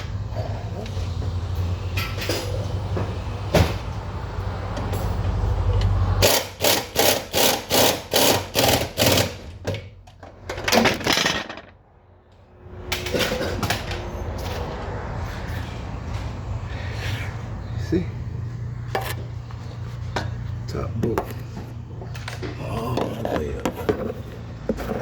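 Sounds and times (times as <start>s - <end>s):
ratchet wrench strokes: 6.2s - 9.3s.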